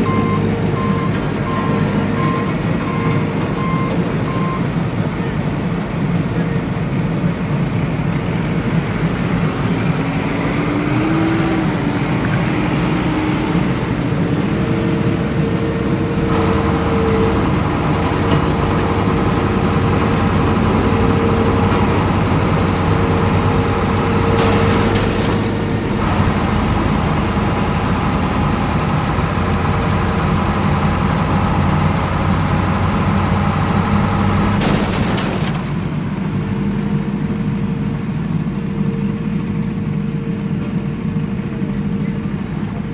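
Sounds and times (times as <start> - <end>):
vehicle motor humming: 0.0 - 42.9.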